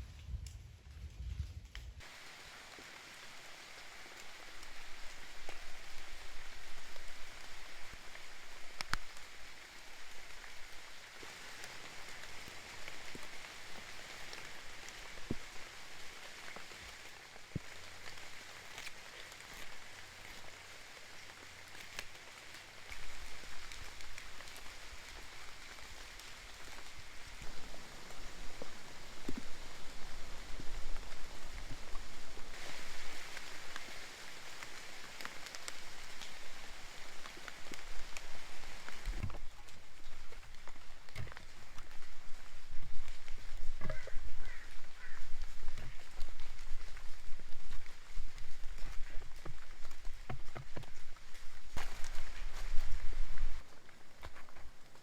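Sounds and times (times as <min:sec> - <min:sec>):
steady rain falling: 0:00.0 - 0:55.0
sharp ticks and pops: 0:08.7 - 0:09.3.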